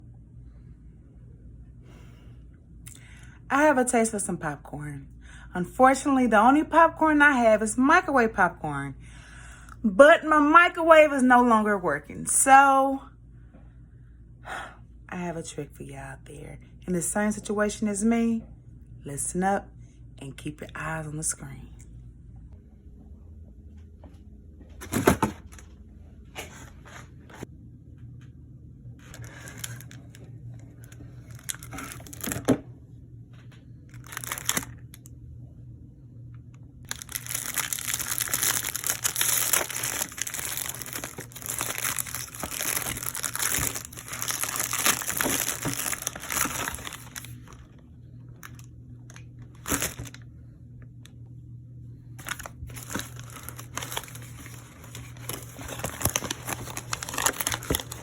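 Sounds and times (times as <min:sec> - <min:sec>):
packaging crinkling and tearing: 0:29.0 - 0:32.6, 0:33.9 - 0:35.1, 0:36.9 - 0:47.7, 0:48.4 - 0:50.2, 0:52.2 - 0:58.0.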